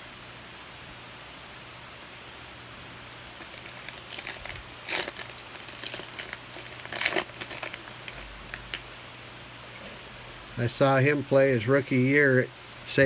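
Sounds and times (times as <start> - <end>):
cards and plastic crinkling: 2.2 - 10.4.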